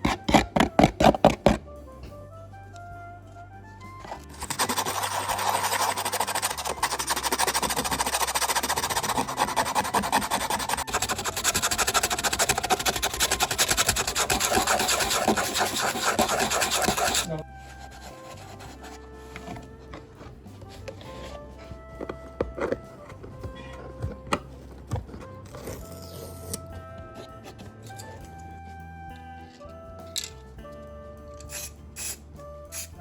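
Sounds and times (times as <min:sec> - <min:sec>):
rapid rasping strokes: 0:00.0 - 0:01.6, 0:04.0 - 0:21.8
soft background music: 0:00.0 - 0:33.0.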